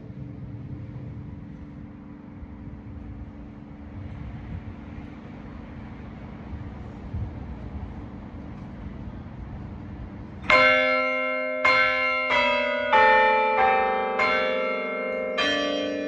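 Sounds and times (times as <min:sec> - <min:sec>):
church bells humming: 0:10.4 - 0:16.0.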